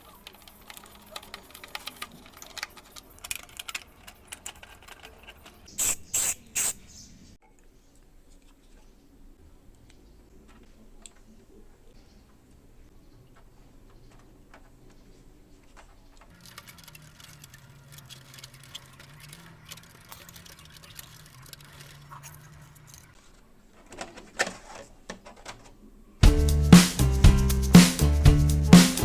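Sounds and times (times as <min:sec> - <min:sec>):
small motor with light rattle: 0:16.3 - 0:23.2.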